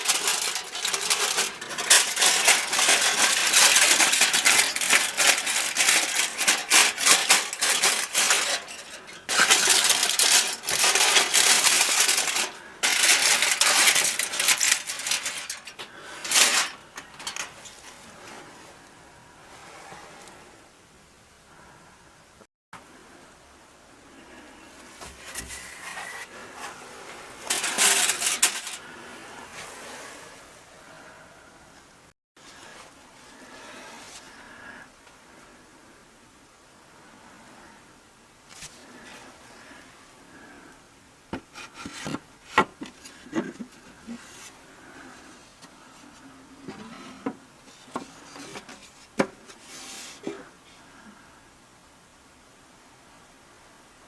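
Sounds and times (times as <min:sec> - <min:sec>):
scraping and rubbing: 0:00.0 - 0:18.7, 0:24.9 - 0:30.5, 0:41.4 - 0:50.5
handling rustling and clattering: 0:00.0 - 0:18.8, 0:24.8 - 0:30.2, 0:38.5 - 0:50.5
crackling rustle: 0:00.0 - 0:20.6, 0:24.1 - 0:31.2, 0:38.4 - 0:51.2.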